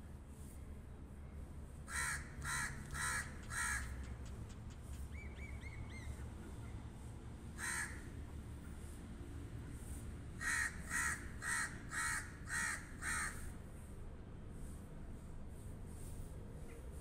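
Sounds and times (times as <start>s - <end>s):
crow cawing: 1.9s - 4.0s, 7.6s - 8.1s, 10.4s - 13.4s.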